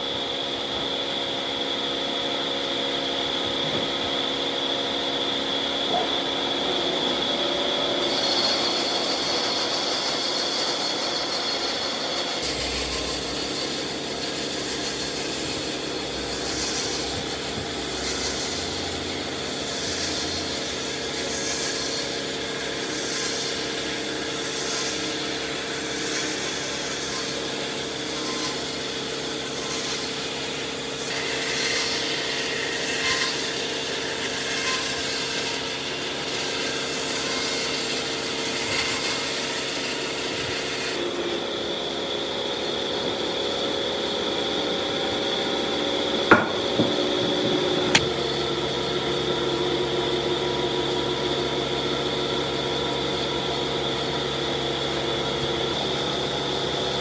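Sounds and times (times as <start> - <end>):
power tool cutting wood: 8.0 - 28.8, 46.3 - 48.2.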